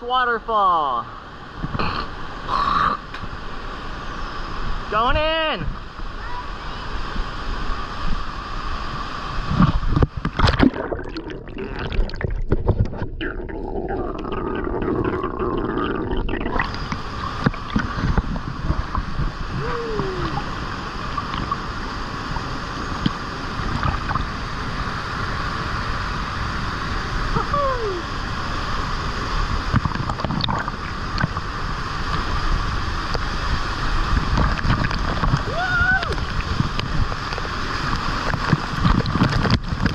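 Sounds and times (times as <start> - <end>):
water splashes: 0.0 - 39.9
waterfall rushing water: 16.6 - 39.8.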